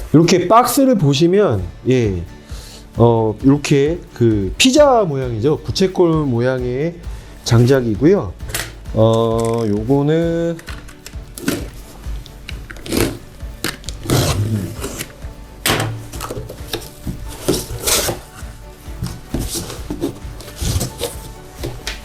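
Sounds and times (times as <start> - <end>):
firewood knocking and clattering: 14.9 - 22.0.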